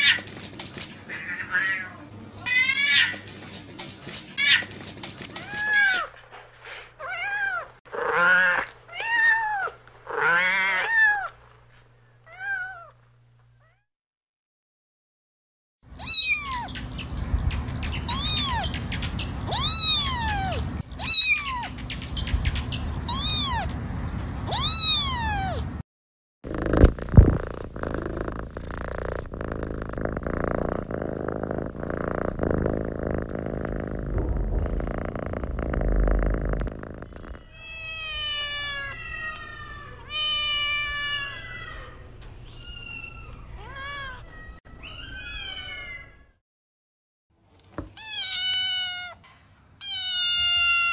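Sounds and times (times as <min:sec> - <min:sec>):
rustling noise: 0:03.1 - 0:07.0, 0:26.5 - 0:36.7
kittens meowing: 0:18.0 - 0:18.7, 0:19.5 - 0:21.7, 0:23.0 - 0:23.8, 0:24.5 - 0:25.7, 0:49.8 - 0:50.9.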